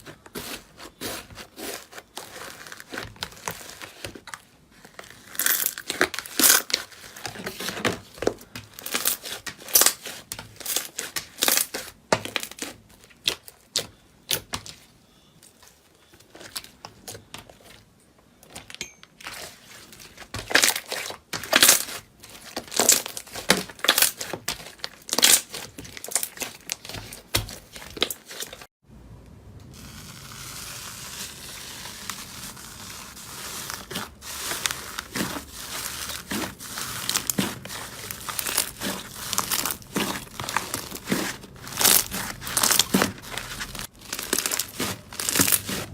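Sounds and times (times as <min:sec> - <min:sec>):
crunchy material crackling: 0:29.6 - 0:45.9.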